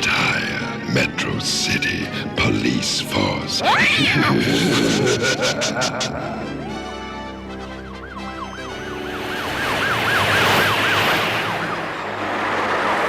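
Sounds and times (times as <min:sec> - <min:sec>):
cartoon police sirens wailing: 0:03.6 - 0:12.2
cars rushing past: 0:06.6 - 0:13.0.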